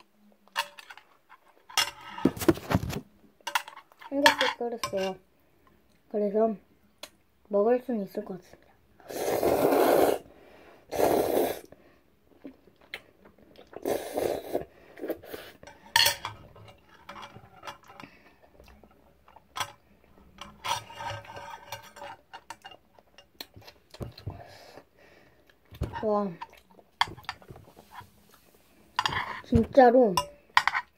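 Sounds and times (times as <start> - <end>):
utensils scraping a bowl: 20.4 - 22.8.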